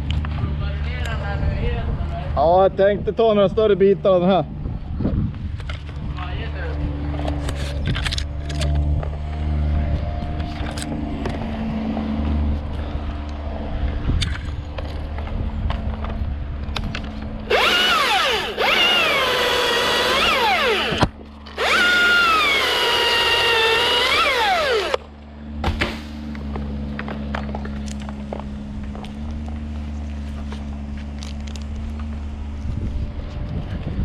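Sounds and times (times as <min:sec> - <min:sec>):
chainsaw cutting wood: 0:17.5 - 0:25.0.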